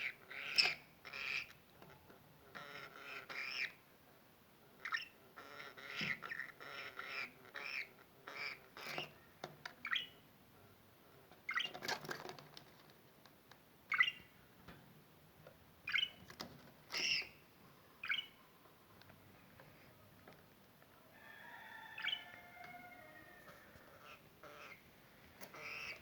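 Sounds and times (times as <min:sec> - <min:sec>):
budgerigar chirps and squawks: 0:00.0 - 0:01.6, 0:02.5 - 0:03.8, 0:04.8 - 0:09.2, 0:09.8 - 0:10.2, 0:11.5 - 0:11.8, 0:13.9 - 0:14.3, 0:15.9 - 0:16.2, 0:16.9 - 0:17.4, 0:18.0 - 0:18.4, 0:21.9 - 0:23.2, 0:23.9 - 0:24.8, 0:25.4 - 0:26.0.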